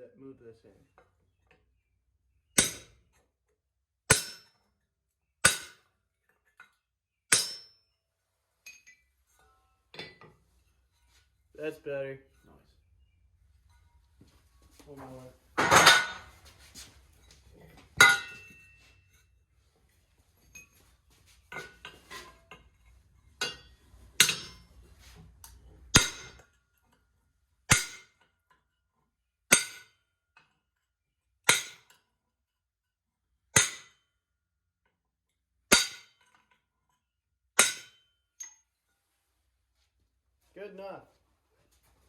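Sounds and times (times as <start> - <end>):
hammer striking steel: 2.6 - 3.0, 4.1 - 4.6, 5.4 - 5.9, 7.3 - 7.8, 18.0 - 18.8, 23.4 - 24.7, 25.9 - 26.4, 27.7 - 28.2, 29.5 - 29.9, 31.5 - 31.9, 33.6 - 34.0, 35.7 - 36.1, 37.6 - 38.1.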